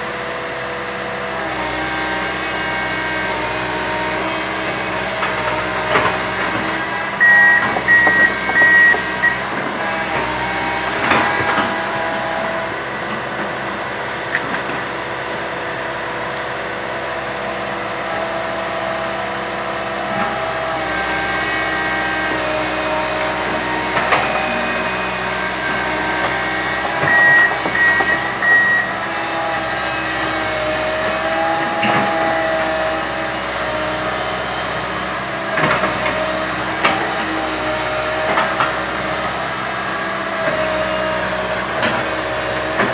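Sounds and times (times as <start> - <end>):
excavator diesel engine: 0.0 - 42.9
hydraulic whine: 0.0 - 42.9
short electronic beeps: 7.2 - 9.4, 27.1 - 28.9.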